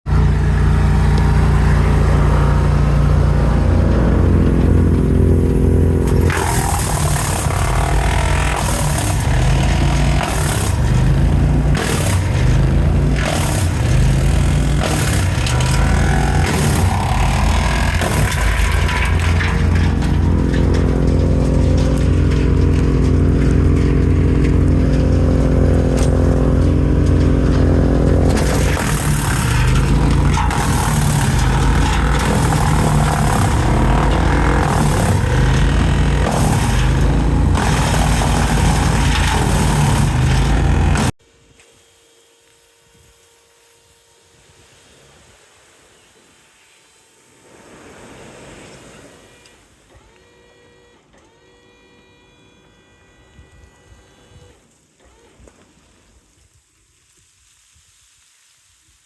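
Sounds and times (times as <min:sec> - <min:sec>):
large engine humming: 0:00.1 - 0:41.2.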